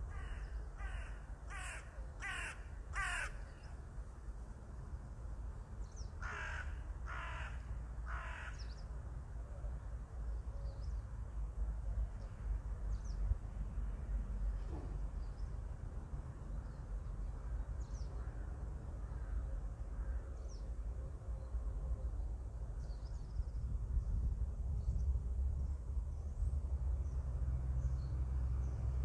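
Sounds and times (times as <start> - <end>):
crow cawing: 0.1 - 3.6, 6.2 - 8.6.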